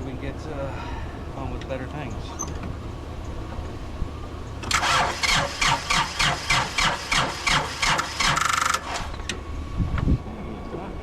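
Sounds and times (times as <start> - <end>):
starter motor cranking engine: 4.6 - 9.4.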